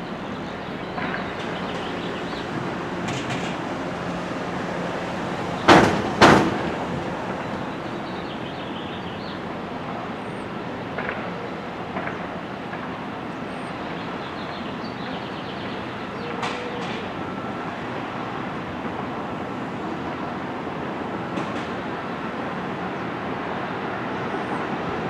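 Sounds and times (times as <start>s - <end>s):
train rumbling on track: 0.0s - 25.0s
sharp clicks and knocks: 0.9s - 4.3s, 5.0s - 7.7s.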